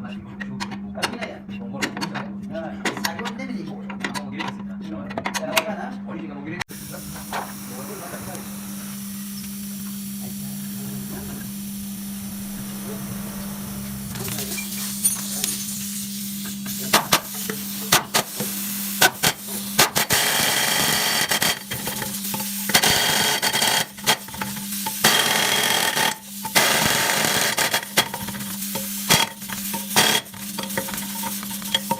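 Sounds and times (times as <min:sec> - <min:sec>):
steady low hum: 0:00.0 - 0:31.9
air hissing bursts: 0:06.7 - 0:31.9.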